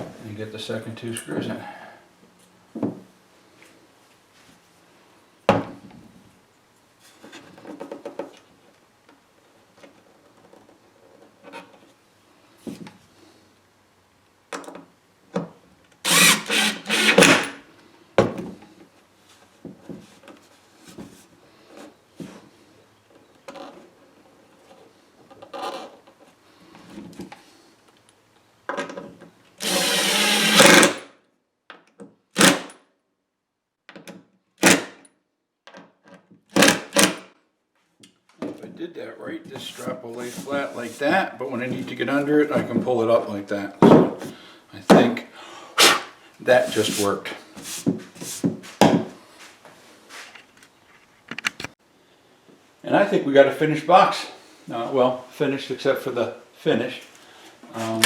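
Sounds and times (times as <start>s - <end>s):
power drill driving screws: 16.0s - 17.6s, 29.6s - 31.1s, 32.4s - 32.7s, 36.6s - 37.2s.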